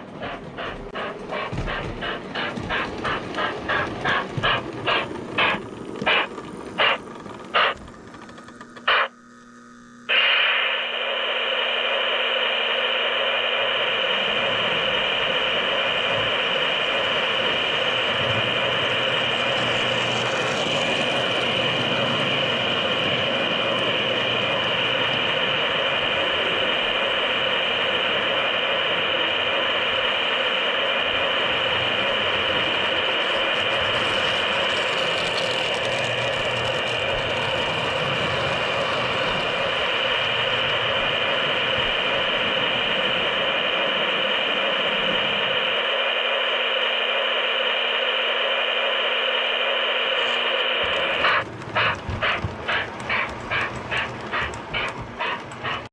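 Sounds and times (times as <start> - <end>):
model train running on track: 0.0 - 10.4, 12.0 - 55.9.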